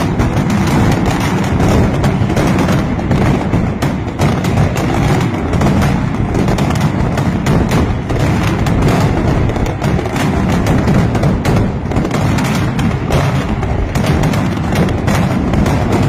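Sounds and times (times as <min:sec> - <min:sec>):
firecrackers cracking in a barrage: 0:00.0 - 0:16.0
heavy rumble: 0:00.0 - 0:16.0.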